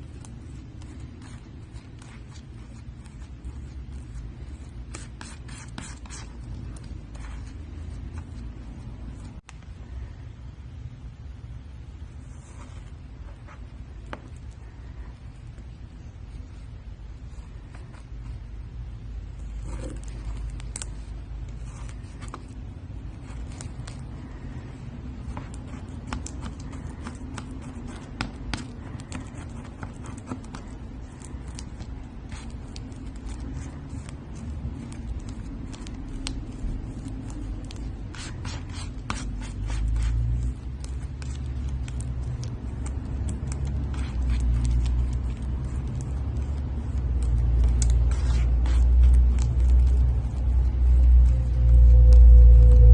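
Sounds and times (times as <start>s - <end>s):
slime crackling and popping: 30.1s - 52.9s
low rumble: 48.6s - 52.9s.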